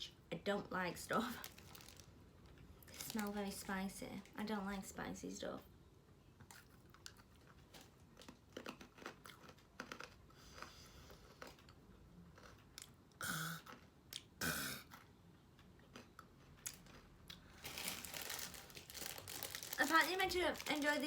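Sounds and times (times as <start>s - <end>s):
person chewing crunchy crackers: 6.4s - 21.0s.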